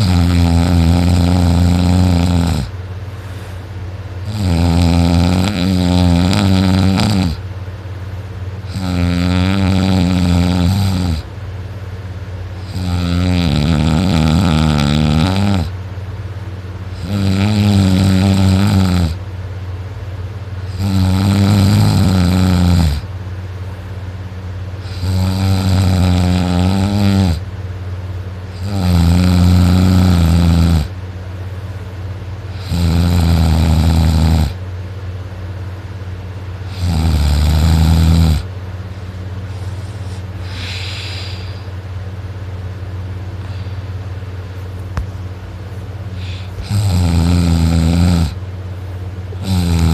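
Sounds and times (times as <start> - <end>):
person snoring loudly: 0.0 - 2.7, 4.2 - 7.4, 8.6 - 11.3, 12.6 - 15.8, 17.0 - 19.2, 20.7 - 23.1, 24.8 - 27.4, 28.5 - 31.0, 32.5 - 34.6, 36.7 - 38.5, 39.5 - 41.7, 46.1 - 48.4, 49.3 - 49.9
steady low hum: 0.0 - 49.9.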